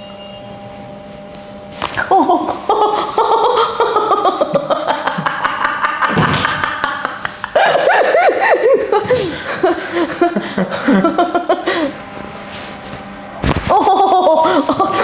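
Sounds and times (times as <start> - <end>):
woman laughing: 2.0 - 12.0, 13.6 - 15.0.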